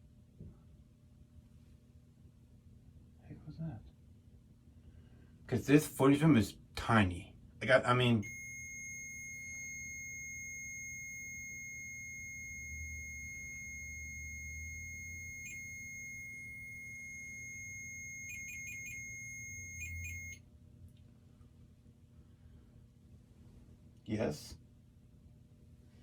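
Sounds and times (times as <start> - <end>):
high-pitched electronic alarm tone: 8.2 - 20.4
short electronic chirps: 8.2 - 20.4.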